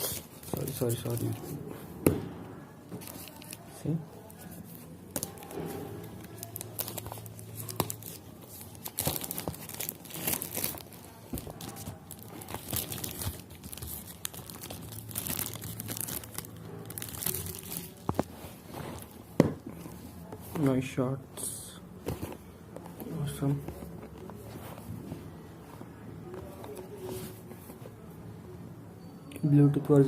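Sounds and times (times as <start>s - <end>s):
packaging crinkling and tearing: 3.0s - 19.3s.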